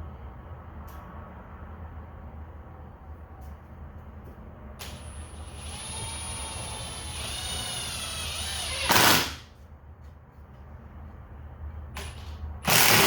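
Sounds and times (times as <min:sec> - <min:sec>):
hammer drill motor whine: 0:05.0 - 0:09.4.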